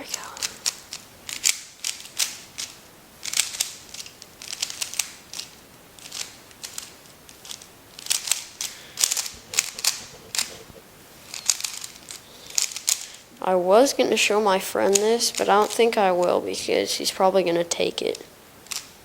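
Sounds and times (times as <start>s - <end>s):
puzzle cube clicking: 0.1s - 10.7s, 11.3s - 13.2s, 18.6s - 18.9s.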